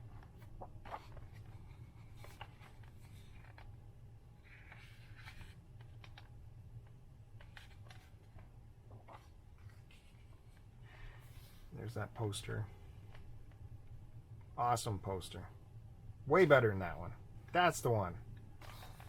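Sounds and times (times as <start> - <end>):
book pages turning: 0.0 - 3.8, 4.4 - 6.5, 7.3 - 12.4, 18.5 - 19.0
paper sliding: 18.6 - 19.0.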